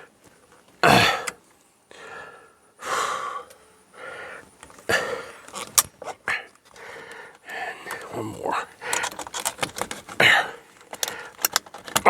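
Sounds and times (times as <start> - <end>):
man gasping grunt: 0.8 - 1.4, 10.2 - 10.6
man heavy exhales: 0.8 - 5.4.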